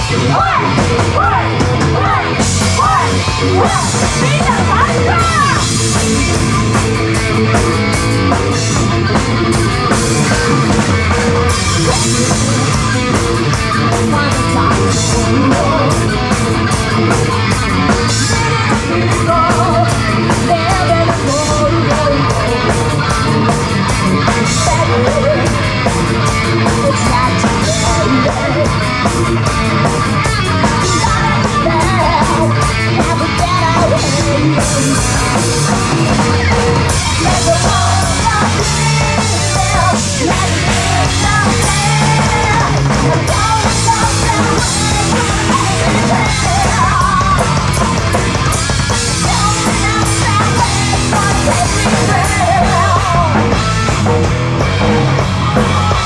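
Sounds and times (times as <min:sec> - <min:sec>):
bass guitar: 0:00.0 - 0:56.0
distorted electric guitar: 0:00.0 - 0:56.0
drum kit: 0:00.0 - 0:56.0
person singing: 0:08.5 - 0:29.4, 0:30.2 - 0:53.6.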